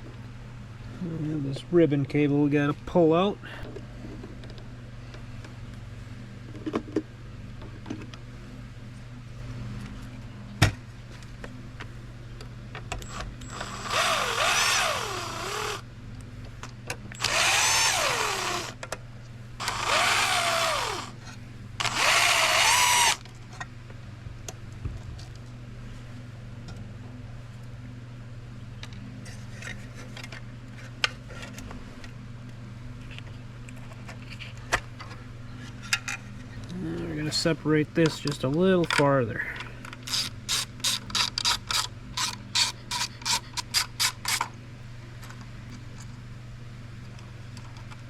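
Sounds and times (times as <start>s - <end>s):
cordless drill whirring: 13.0s - 15.8s, 17.2s - 18.8s, 19.6s - 21.2s, 21.8s - 23.2s, 40.0s - 44.4s.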